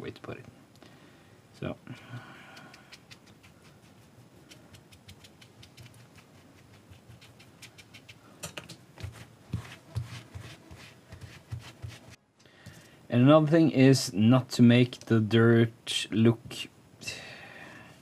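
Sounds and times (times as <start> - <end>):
paint brush scratching and tapping: 2.0 - 12.8.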